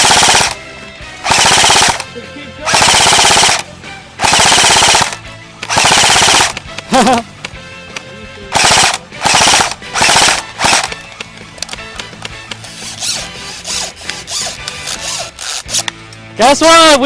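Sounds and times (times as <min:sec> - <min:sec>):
airsoft rifle full-auto bursts: 0:00.0 - 0:00.6, 0:01.2 - 0:02.1, 0:02.7 - 0:06.6, 0:08.5 - 0:11.0.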